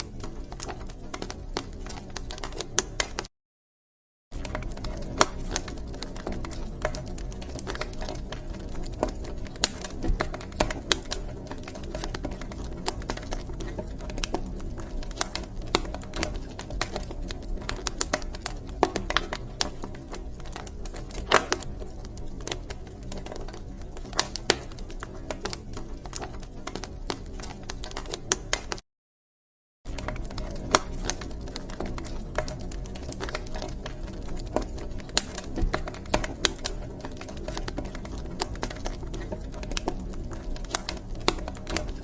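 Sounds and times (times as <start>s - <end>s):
low rumble of flames: 0.0s - 3.3s, 4.4s - 28.8s, 29.9s - 42.0s
wood fire crackling: 0.0s - 3.3s, 4.4s - 28.8s, 29.9s - 42.0s.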